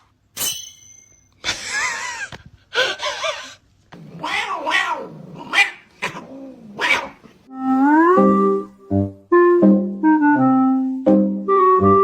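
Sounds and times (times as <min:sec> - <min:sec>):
cat crying: 0:04.0 - 0:07.2.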